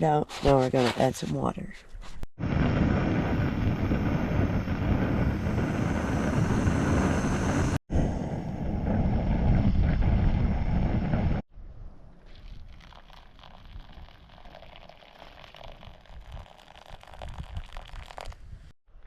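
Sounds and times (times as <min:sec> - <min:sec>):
wind buffeting microphone: 0:02.4 - 0:11.4.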